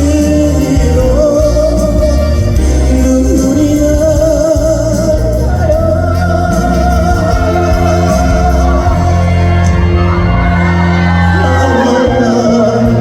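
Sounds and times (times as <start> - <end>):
ballad with full band: 0.0 - 13.0.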